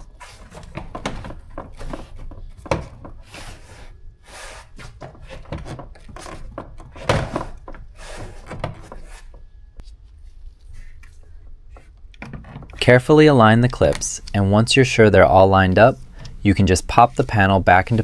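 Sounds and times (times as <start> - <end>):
plastic trim knocks and clicks: 0.3 - 3.3.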